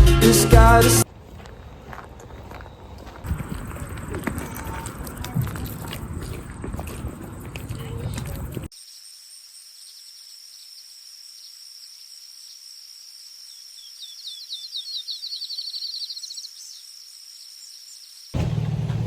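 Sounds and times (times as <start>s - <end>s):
songbird chirping: 1.0s - 18.4s
high insect trill: 7.5s - 18.4s.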